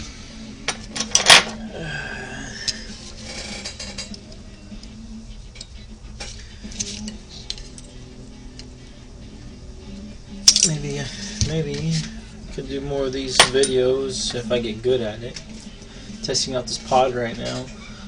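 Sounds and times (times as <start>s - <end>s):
metal parts and tools clinking: 0.7s - 1.6s, 5.6s - 8.8s, 10.4s - 12.1s.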